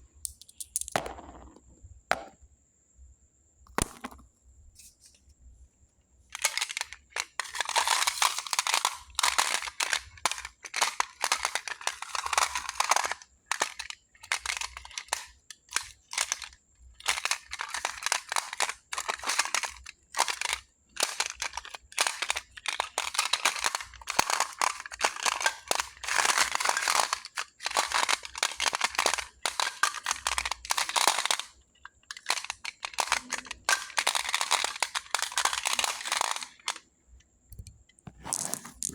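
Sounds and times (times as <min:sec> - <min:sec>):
pebbles clattering: 0:00.3 - 0:02.3, 0:03.7 - 0:04.2, 0:21.0 - 0:31.5, 0:32.1 - 0:36.8.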